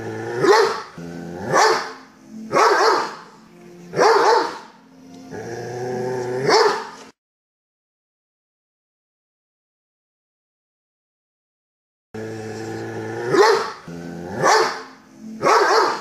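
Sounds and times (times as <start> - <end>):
dog growling: 0.0 - 7.2, 12.2 - 16.0
dog barking: 0.4 - 3.3, 3.9 - 4.8, 6.4 - 7.0, 13.3 - 13.8, 14.4 - 16.0.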